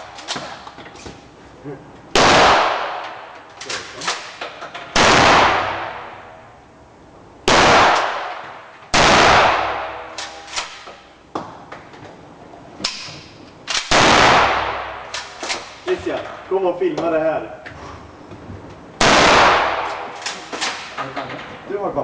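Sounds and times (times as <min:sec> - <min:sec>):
shotgun blasts echoing: 0:02.1 - 0:03.4, 0:04.0 - 0:06.4, 0:07.4 - 0:10.8, 0:13.7 - 0:15.9, 0:19.0 - 0:21.0
sharp clicks and knocks: 0:03.0 - 0:05.0.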